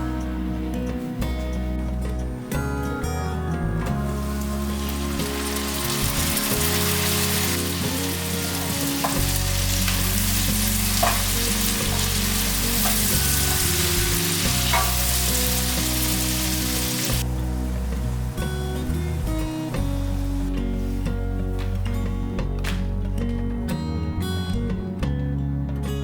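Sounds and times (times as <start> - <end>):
soft background music: 0.0 - 26.0
food sizzling in a frying pan: 4.0 - 20.9.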